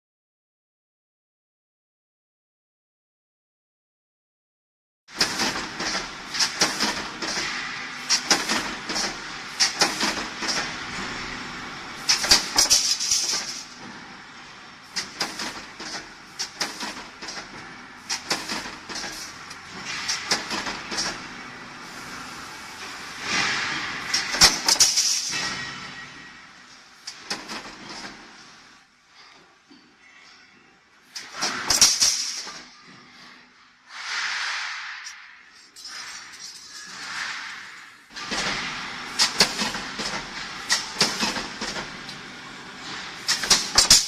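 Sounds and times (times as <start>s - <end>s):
sharp machine clicks and knocks: 8.1s - 10.7s, 12.1s - 13.7s, 14.9s - 21.2s, 39.2s - 42.0s, 43.2s - 44.0s.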